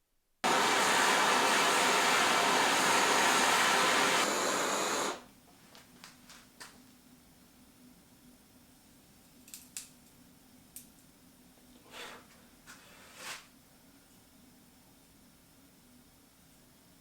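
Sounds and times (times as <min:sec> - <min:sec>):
rush of air: 0:00.4 - 0:05.2.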